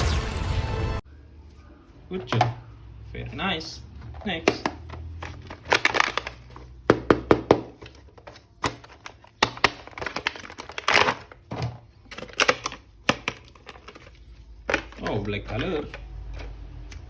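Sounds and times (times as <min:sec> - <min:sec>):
plastic clicks and knocks: 0:04.0 - 0:14.1
packaging rustle: 0:04.2 - 0:07.0, 0:07.7 - 0:17.0
plastic package crinkling: 0:04.2 - 0:17.0.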